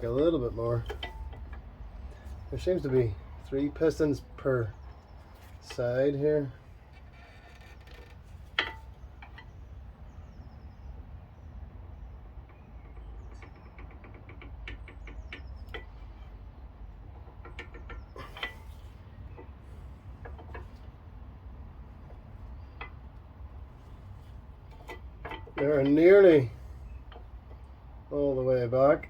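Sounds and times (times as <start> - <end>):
low steady rumble: 0.0 - 29.0
metal tool clicks and knocks: 0.8 - 1.7, 17.2 - 18.7, 24.7 - 26.0.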